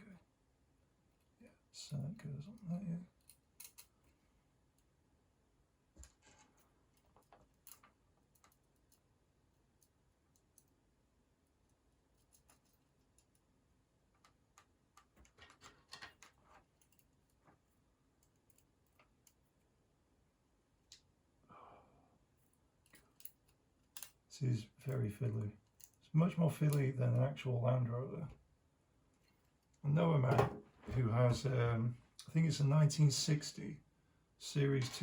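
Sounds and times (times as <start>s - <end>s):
small metal parts clicking: 3.2s - 4.1s, 14.1s - 17.4s, 22.8s - 24.2s.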